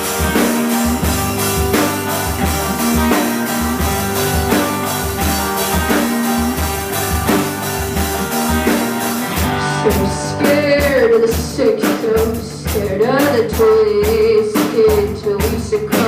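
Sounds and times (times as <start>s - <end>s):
drum kit beat: 0.0s - 16.0s
rock band playing: 0.0s - 16.0s.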